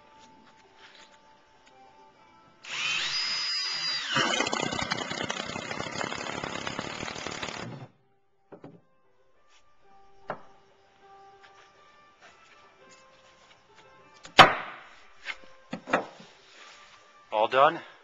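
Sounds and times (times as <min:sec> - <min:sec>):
faint background music: 0:00.0 - 0:04.2, 0:07.6 - 0:18.0
power drill driving screw: 0:02.6 - 0:07.9.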